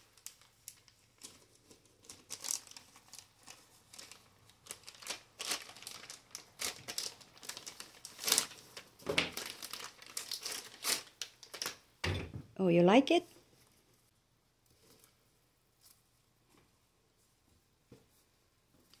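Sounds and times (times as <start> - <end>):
packaging crinkling: 0.0 - 11.9.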